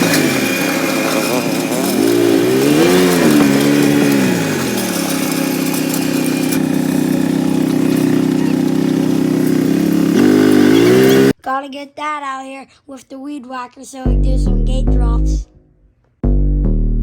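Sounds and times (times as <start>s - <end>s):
small engine revving: 0.0s - 11.4s.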